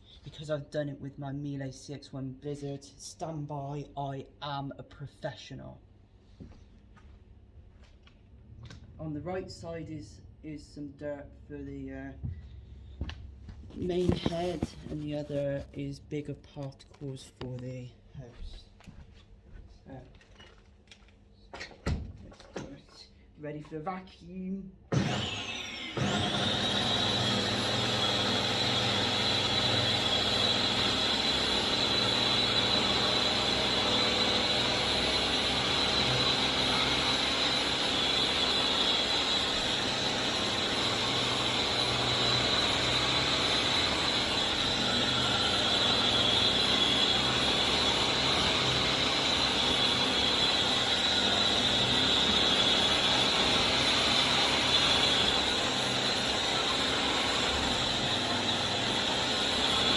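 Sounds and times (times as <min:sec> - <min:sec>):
vacuum cleaner motor whine: 0:24.9 - 0:59.9.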